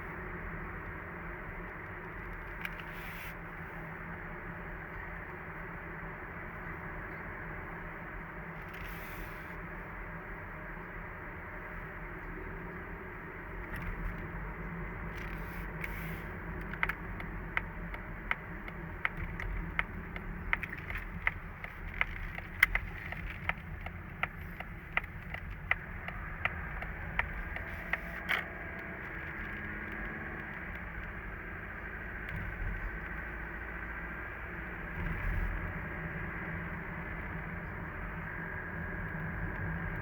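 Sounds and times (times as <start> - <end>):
car engine low rumble: 0.0 - 40.0
regular sharp clicks: 15.1 - 31.2.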